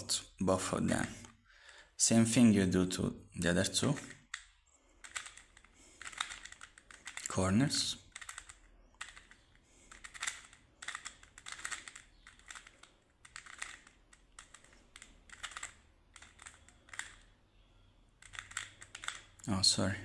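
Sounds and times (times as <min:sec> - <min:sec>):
puzzle cube plastic clicks: 0:03.8 - 0:07.4, 0:08.0 - 0:17.4, 0:18.2 - 0:19.5.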